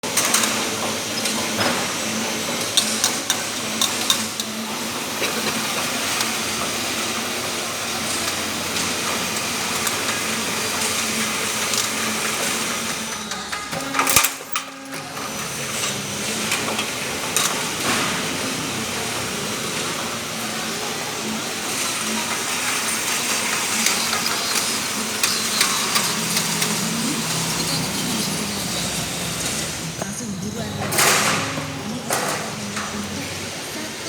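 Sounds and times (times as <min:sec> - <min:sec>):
machinery whirring hiss: 0:00.0 - 0:34.0.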